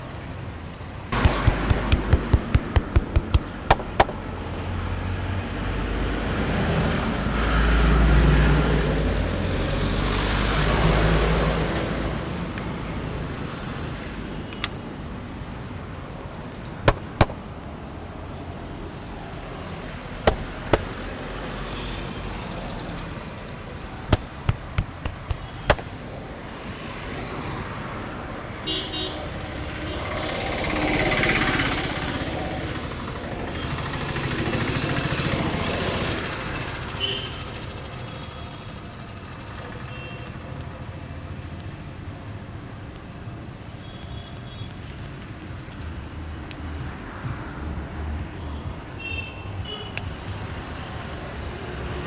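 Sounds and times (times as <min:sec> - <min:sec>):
street traffic rumbling: 0:00.0 - 0:52.0
hand slaps on head: 0:01.2 - 0:04.3, 0:16.9 - 0:17.5, 0:20.3 - 0:21.0, 0:24.1 - 0:26.1.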